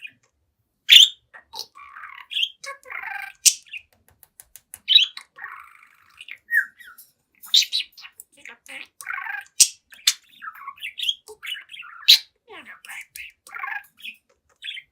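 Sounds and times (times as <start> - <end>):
budgerigar chirping and warbling: 0.0 - 0.2, 0.9 - 3.9, 4.8 - 14.9
budgerigar squawks: 0.9 - 3.6, 7.5 - 14.9.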